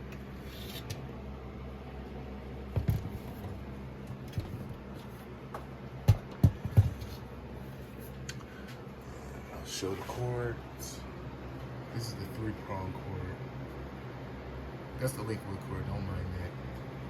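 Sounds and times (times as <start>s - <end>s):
room fan humming: 0.0s - 17.0s
dull thumps: 2.7s - 7.2s.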